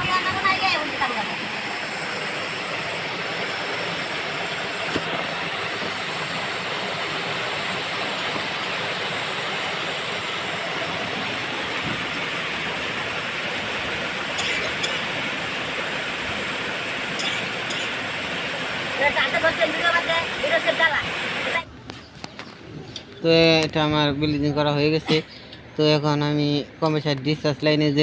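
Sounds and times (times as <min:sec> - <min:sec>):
gas torch flame hissing: 0:00.2 - 0:21.6.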